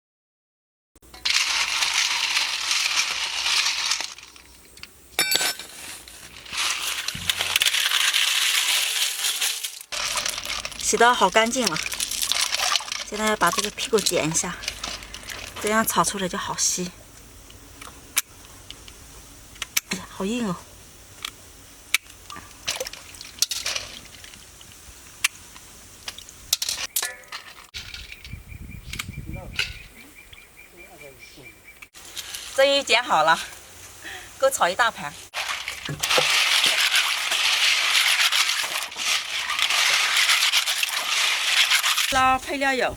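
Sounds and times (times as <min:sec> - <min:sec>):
snail shells grinding and clinking: 0:01.2 - 0:16.8, 0:22.0 - 0:25.3, 0:26.0 - 0:28.2, 0:32.0 - 0:32.9, 0:35.3 - 0:42.5.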